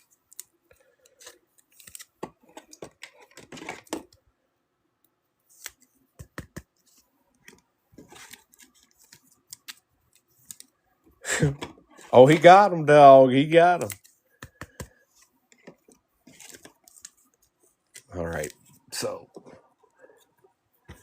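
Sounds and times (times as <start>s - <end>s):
cards rustling: 0.0s - 4.2s, 5.5s - 10.8s, 11.5s - 12.7s, 13.3s - 21.0s
faint clicks and taps: 13.9s - 18.7s.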